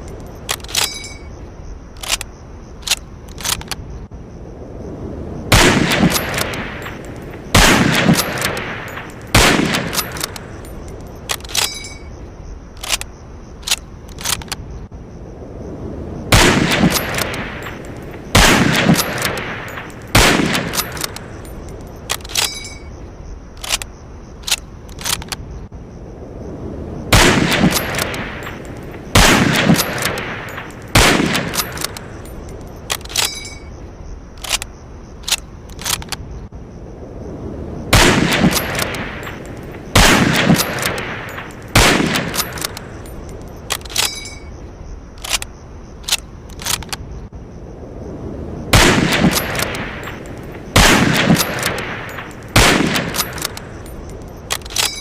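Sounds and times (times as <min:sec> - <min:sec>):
rifle bolt action clicks: 0:00.0 - 0:01.1, 0:02.0 - 0:03.8, 0:08.2 - 0:11.9, 0:12.8 - 0:14.6, 0:19.0 - 0:22.7, 0:23.6 - 0:25.4, 0:29.8 - 0:33.5, 0:34.4 - 0:36.2, 0:40.6 - 0:44.4, 0:45.2 - 0:47.0, 0:51.4 - 0:55.0
rifle shots echoing: 0:05.5 - 0:10.5, 0:16.3 - 0:21.4, 0:27.1 - 0:32.2, 0:37.9 - 0:43.1, 0:48.7 - 0:54.0.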